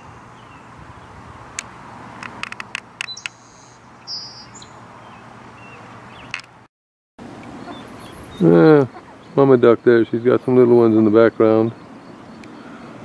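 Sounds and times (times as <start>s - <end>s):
sharp clicks: 1.6s - 3.4s, 6.3s - 6.6s
high bird chirps: 3.0s - 6.4s, 7.6s - 13.0s.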